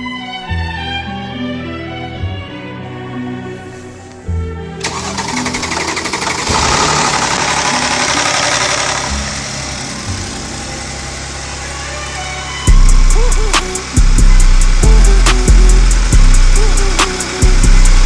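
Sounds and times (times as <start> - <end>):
engine running with fast rattle: 4.8 - 18.0.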